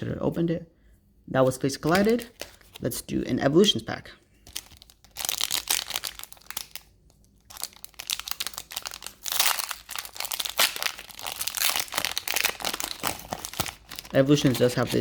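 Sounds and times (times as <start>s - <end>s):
foil wrapper crinkling and tearing: 1.8s - 2.8s, 4.5s - 15.0s.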